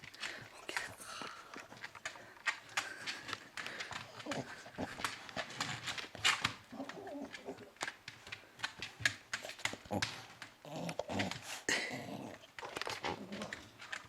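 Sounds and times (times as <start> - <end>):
dog snoring and snuffling: 9.5 - 13.8.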